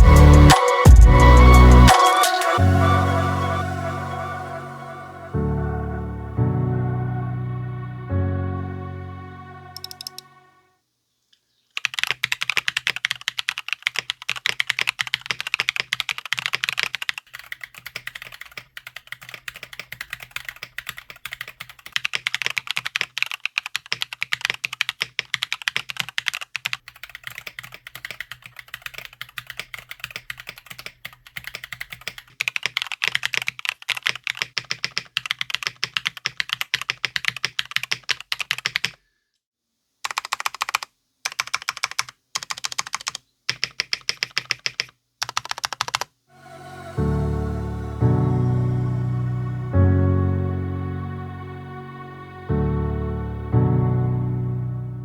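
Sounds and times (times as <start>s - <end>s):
clacky mechanical keyboard typing: 11.8s - 39.0s, 40.0s - 46.1s.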